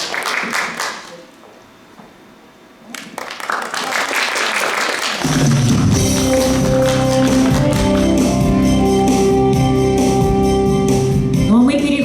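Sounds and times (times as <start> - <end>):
applause: 0.0 - 1.3, 2.9 - 8.4
music with held chords and beat: 5.3 - 11.5.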